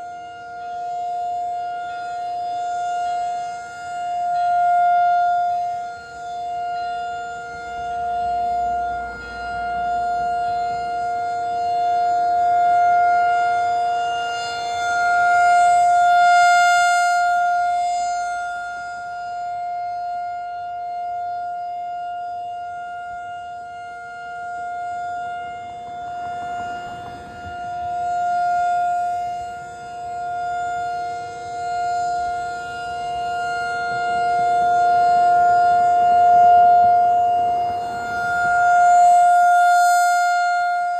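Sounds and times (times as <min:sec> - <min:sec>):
rotating warning siren: 0:00.0 - 0:40.9.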